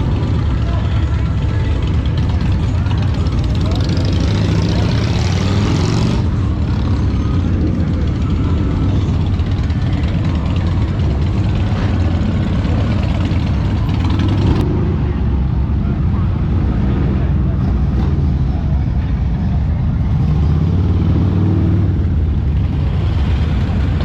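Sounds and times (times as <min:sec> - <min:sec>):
motorcycle engines idling: 0:00.0 - 0:16.4, 0:21.8 - 0:24.0.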